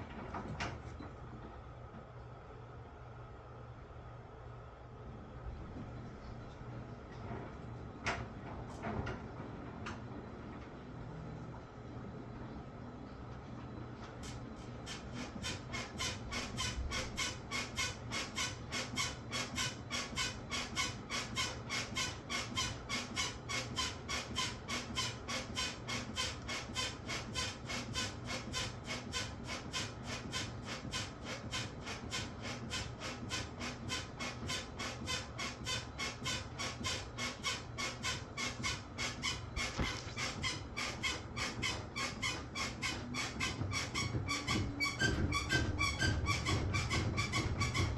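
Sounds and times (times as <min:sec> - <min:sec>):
washing machine squeaking: 0:14.2 - 0:47.9.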